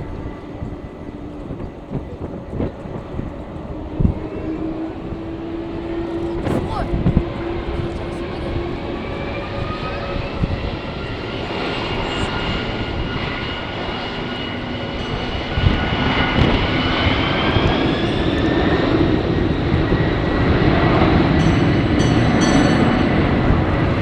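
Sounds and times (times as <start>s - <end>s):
jet engines whining: 0.0s - 24.0s.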